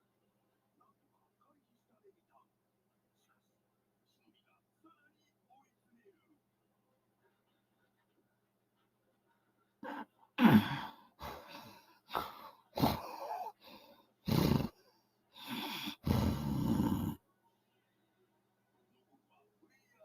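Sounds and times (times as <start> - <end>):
woman snoring and snorting: 10.4 - 14.8, 15.4 - 17.2.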